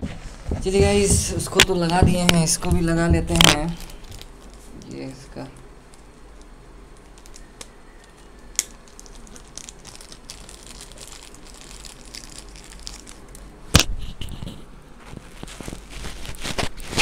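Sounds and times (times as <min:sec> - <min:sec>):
knock on microphone: 0:00.0 - 0:03.7
cable rustling: 0:00.0 - 0:17.0.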